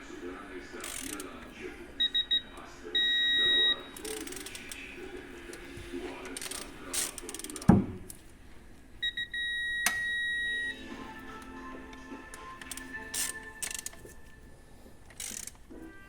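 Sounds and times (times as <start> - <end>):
ratchet wrench clicking: 0.8 - 1.3, 6.4 - 7.7, 15.1 - 15.6
electronic beeper: 2.0 - 4.4, 9.0 - 10.8.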